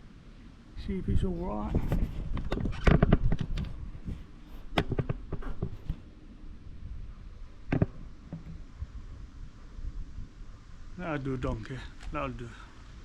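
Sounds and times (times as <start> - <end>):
camera handling knocks and clicks: 4.7 - 6.0.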